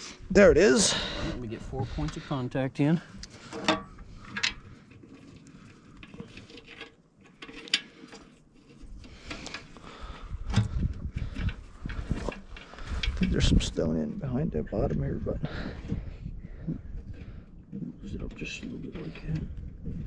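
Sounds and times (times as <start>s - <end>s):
parts clinking and knocking: 3.4s - 5.0s.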